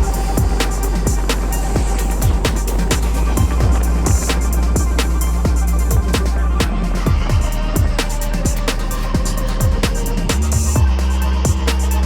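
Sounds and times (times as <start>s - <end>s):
deep kick drum: 0.0s - 12.0s
hi-hat ticks: 0.0s - 12.0s
steady bass: 0.0s - 12.0s.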